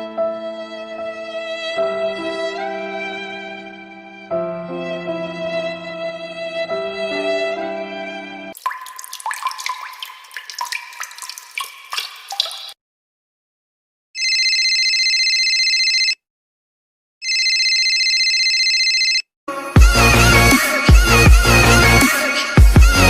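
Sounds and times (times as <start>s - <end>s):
plinking water drops: 8.6s - 12.8s.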